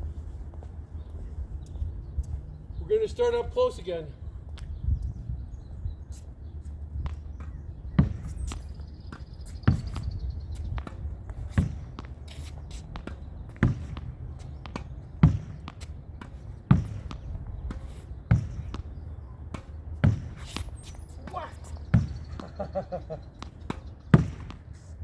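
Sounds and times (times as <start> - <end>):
shuffling footsteps: 0.0 - 2.5
ball bouncing: 7.0 - 24.8
tennis ball striking wall: 7.0 - 24.8.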